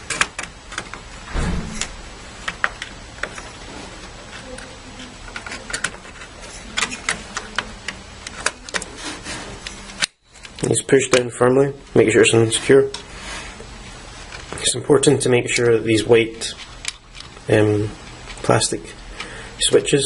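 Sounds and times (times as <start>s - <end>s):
faint steady hum: 0.0s - 20.0s
low thump: 1.3s - 2.4s.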